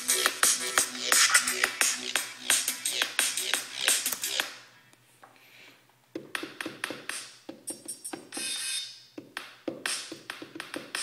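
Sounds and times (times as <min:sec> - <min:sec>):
electronic drum beat: 0:00.0 - 0:04.4, 0:06.2 - 0:11.0.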